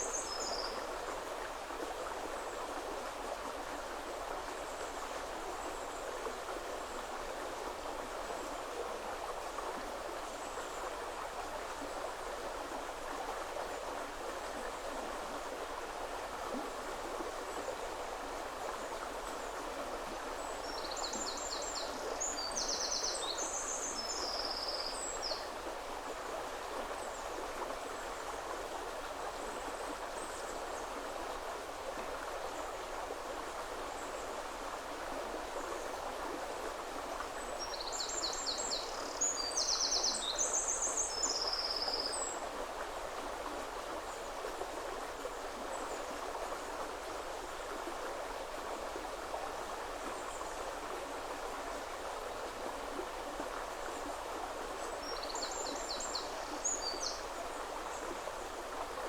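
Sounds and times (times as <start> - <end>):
songbird singing: 37.6 - 42.2.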